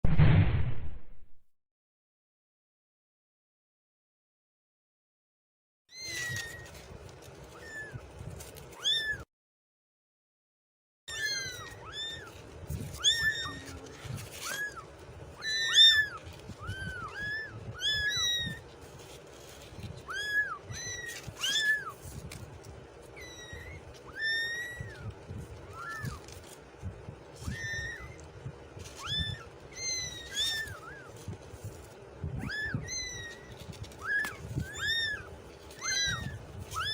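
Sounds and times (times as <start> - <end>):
kittens meowing: 5.9 - 9.2, 11.1 - 22.2, 23.0 - 26.5, 27.3 - 36.9.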